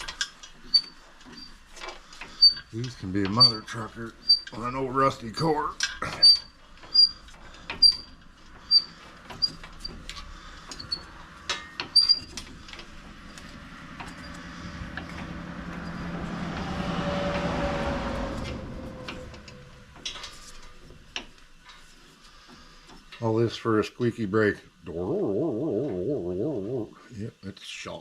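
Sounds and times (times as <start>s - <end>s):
passing vehicle road noise: 8.4s - 21.6s.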